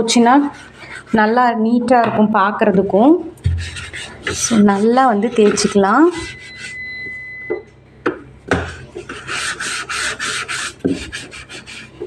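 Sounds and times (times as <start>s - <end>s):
scrubbing inside refrigerator: 3.5s - 6.9s, 8.7s - 12.0s.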